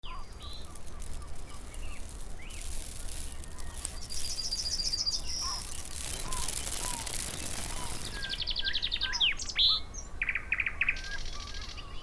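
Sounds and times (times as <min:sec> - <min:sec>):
birds chirping: 0:00.0 - 0:10.0.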